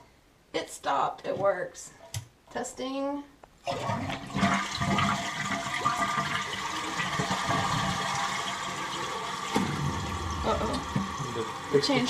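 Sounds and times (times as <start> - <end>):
toilet flushing water rushing: 3.6 - 12.0.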